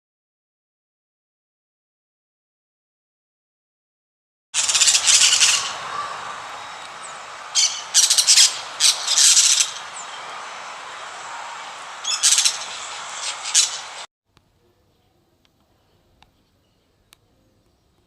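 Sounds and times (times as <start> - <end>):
parrots screeching: 4.6 - 14.0
steady background hiss: 4.6 - 17.8.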